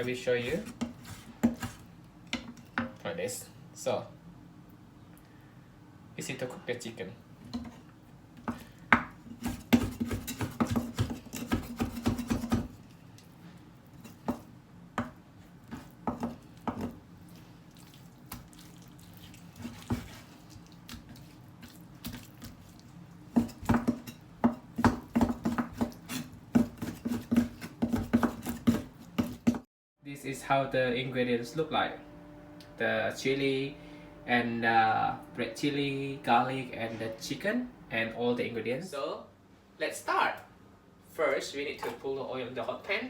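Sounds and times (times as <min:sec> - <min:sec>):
faint low hum: 0:30.0 - 0:39.7.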